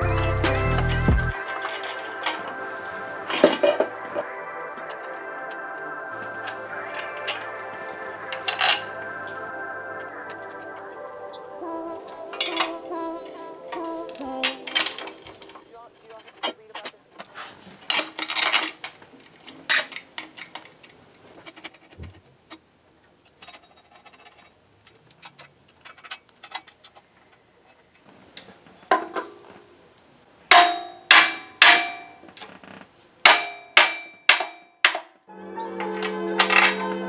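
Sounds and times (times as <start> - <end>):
metal tools clinking and clanging: 0.0 - 5.1, 12.4 - 12.9, 13.7 - 22.2, 23.2 - 27.4, 30.5 - 32.6, 36.4 - 37.0.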